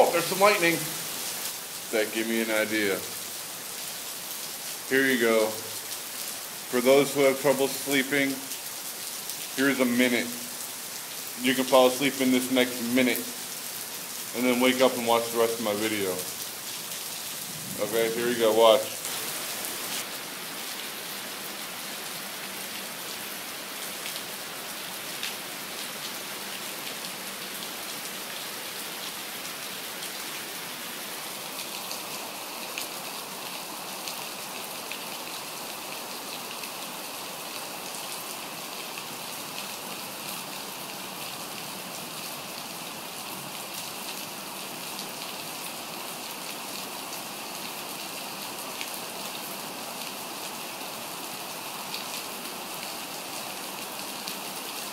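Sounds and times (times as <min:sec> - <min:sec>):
heavy rain pattering: 0:00.0 - 0:30.6.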